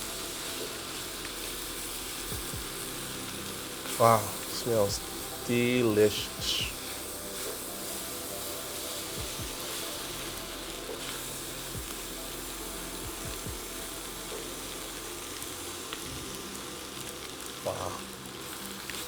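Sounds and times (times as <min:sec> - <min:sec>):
food sizzling in a pan: 0:00.0 - 0:19.0.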